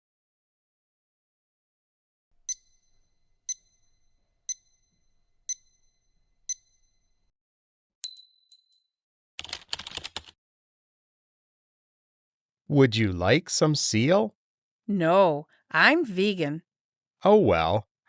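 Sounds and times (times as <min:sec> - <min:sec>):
bright dings: 0:02.5 - 0:07.2, 0:08.0 - 0:08.9.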